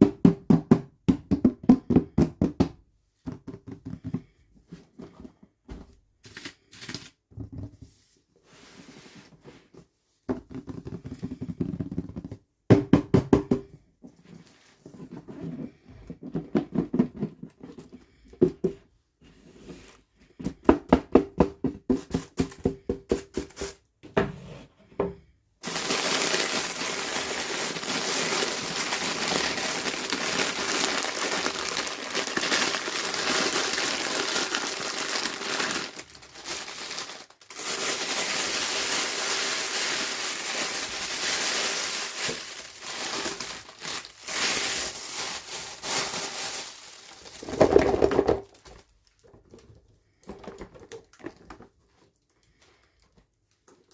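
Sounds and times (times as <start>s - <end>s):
wrapping crinkling and tearing: 25.6s - 49.2s.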